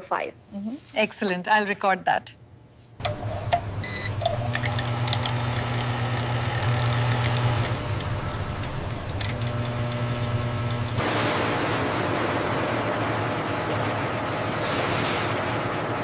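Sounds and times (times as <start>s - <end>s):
factory machinery humming: 3.0s - 16.0s
short beep: 3.8s - 4.2s
scattered clicks: 4.2s - 11.0s.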